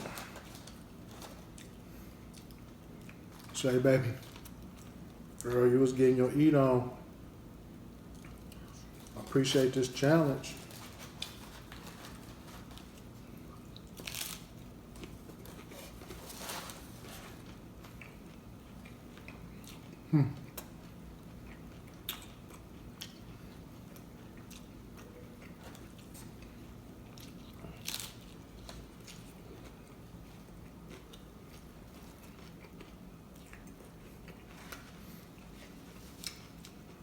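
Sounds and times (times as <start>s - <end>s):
low falling hum from eater: 0.0s - 37.0s
taco shells crunching: 8.1s - 37.0s.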